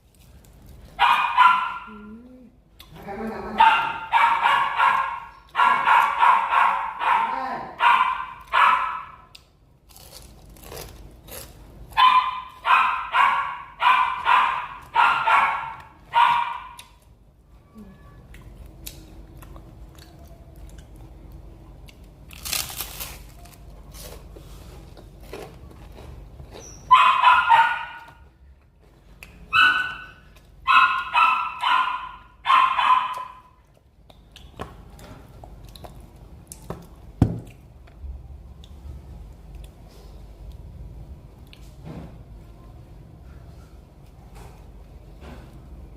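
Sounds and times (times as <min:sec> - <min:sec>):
dog barking: 0:01.0 - 0:02.0, 0:03.6 - 0:09.3, 0:12.0 - 0:16.8, 0:26.9 - 0:28.2, 0:29.5 - 0:33.6.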